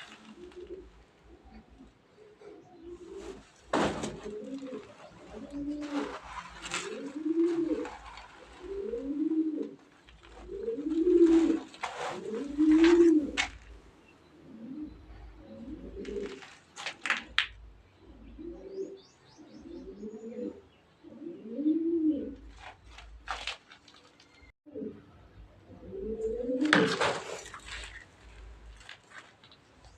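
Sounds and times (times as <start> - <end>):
pigeons cooing: 0.0 - 13.7, 14.3 - 16.5, 18.0 - 22.7, 24.7 - 25.1, 25.7 - 27.5.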